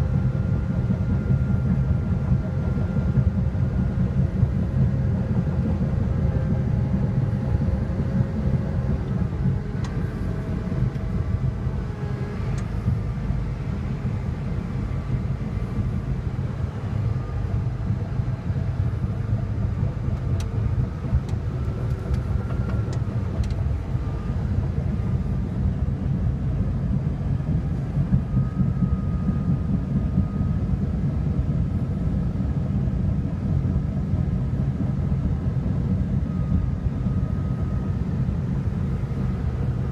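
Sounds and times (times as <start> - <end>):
bulldozer diesel engine rumbling: 6.6 - 29.6.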